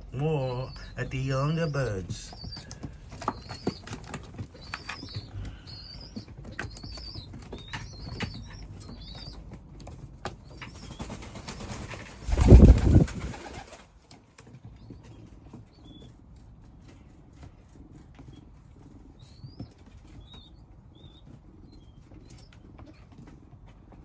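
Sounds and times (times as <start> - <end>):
young pigeons squeaking: 0.0 - 13.9, 14.6 - 24.0
wings flapping: 10.5 - 14.0.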